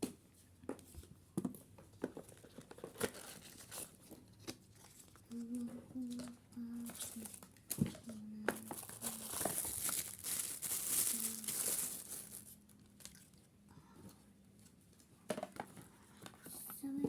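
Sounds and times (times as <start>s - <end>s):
plastic packaging crinkling: 2.2s - 13.5s.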